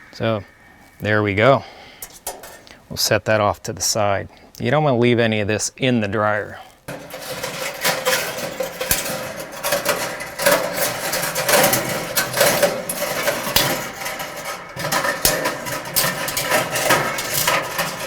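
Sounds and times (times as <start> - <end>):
metal wire and housing clinking: 0.0 - 2.9, 6.9 - 18.0.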